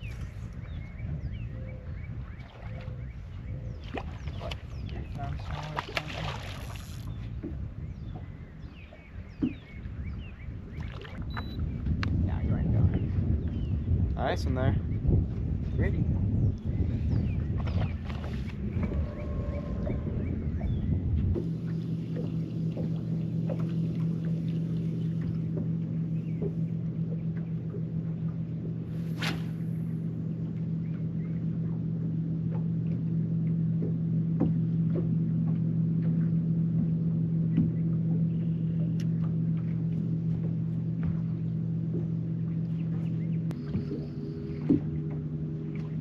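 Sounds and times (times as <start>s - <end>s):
outboard motor droning: 0.0s - 46.0s.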